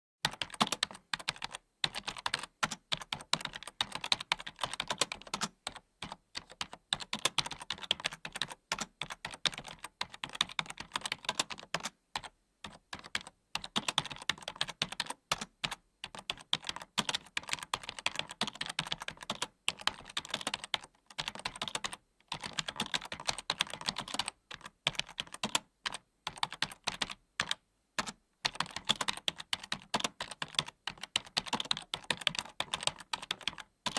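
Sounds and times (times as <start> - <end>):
keyboard typing: 0.2 - 33.9.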